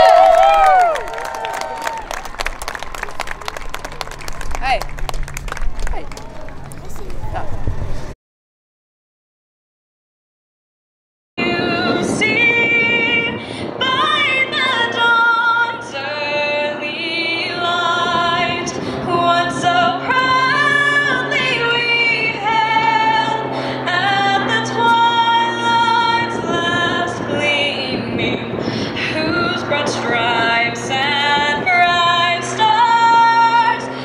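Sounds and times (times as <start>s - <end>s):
woman singing: 11.4s - 34.0s.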